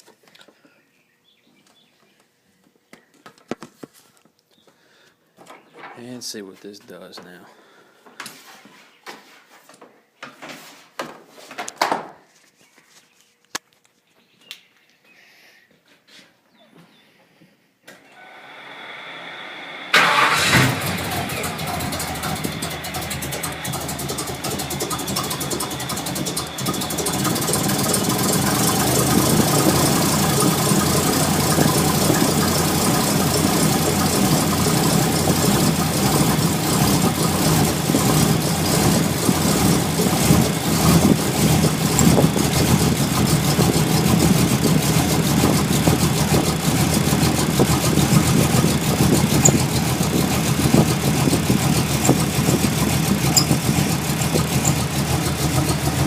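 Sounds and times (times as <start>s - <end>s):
car engine idling roughly: 19.9s - 56.0s.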